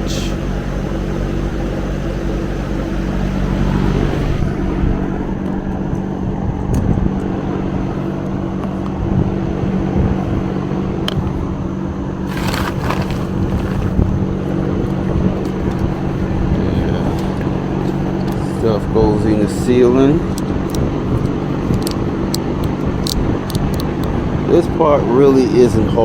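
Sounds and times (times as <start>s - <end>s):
clattering handling noise: 12.3s - 14.1s.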